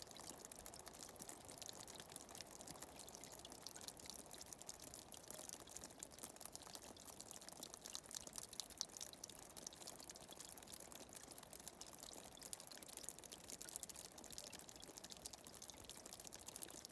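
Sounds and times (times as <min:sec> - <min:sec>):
water trickling and dripping: 0:00.0 - 0:16.9.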